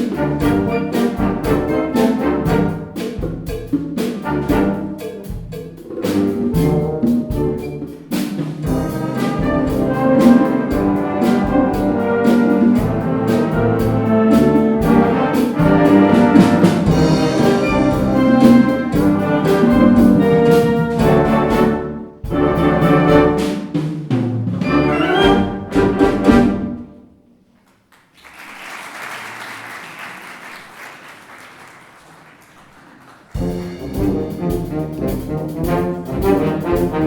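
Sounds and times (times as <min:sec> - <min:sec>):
wind band brass playing: 0:00.0 - 0:03.4, 0:04.2 - 0:07.9, 0:08.6 - 0:27.2, 0:33.3 - 0:37.0
steady percussion: 0:00.0 - 0:27.2, 0:33.0 - 0:37.0.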